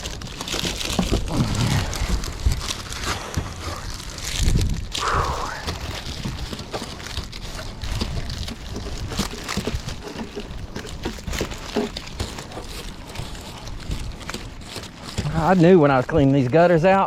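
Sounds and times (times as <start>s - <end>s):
wind rumbling on microphone: 0.0s - 15.4s
hands tapping and scraping metal roof: 6.2s - 17.0s.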